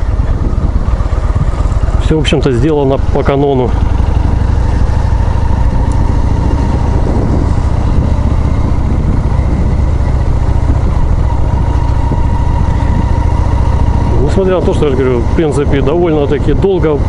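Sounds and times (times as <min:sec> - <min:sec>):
motorcycle engine running: 0:00.0 - 0:17.0.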